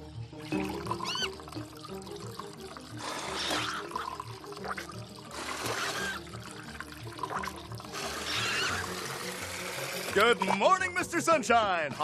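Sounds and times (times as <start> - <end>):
cartoon music with low beat: 10.0 - 12.0.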